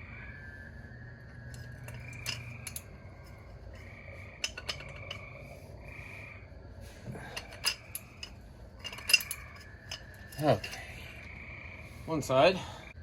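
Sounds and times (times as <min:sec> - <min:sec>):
chirping chorus: 0:00.0 - 0:06.8
wrench clinking on metal bolts: 0:01.5 - 0:05.3, 0:07.4 - 0:10.9.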